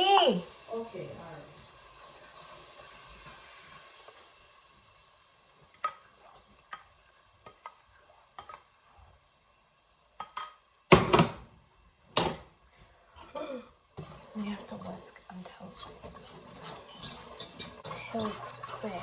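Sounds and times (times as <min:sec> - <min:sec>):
faint sizzle: 0:00.0 - 0:19.0
whisk clicking and scraping pot: 0:14.0 - 0:19.0.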